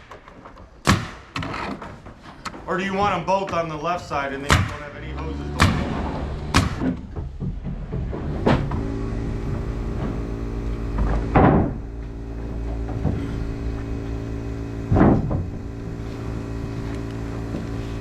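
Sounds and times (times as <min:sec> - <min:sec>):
pneumatic nail gun shots: 0:00.8 - 0:01.8, 0:05.6 - 0:07.0, 0:10.9 - 0:11.9, 0:14.9 - 0:17.8
air compressor running: 0:04.6 - 0:07.0, 0:08.2 - 0:18.0.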